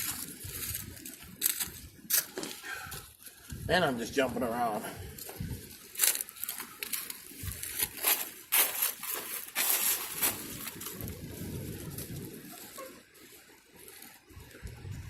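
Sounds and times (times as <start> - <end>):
rustling and scuffing: 5.0 - 14.8.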